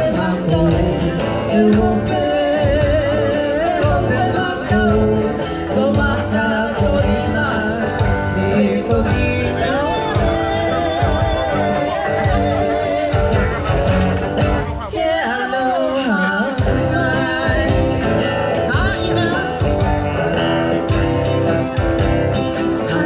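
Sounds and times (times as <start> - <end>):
steady bass beat: 0.0 - 14.9, 16.5 - 23.0
guitar accompaniment: 0.0 - 23.0
person singing: 0.0 - 23.0.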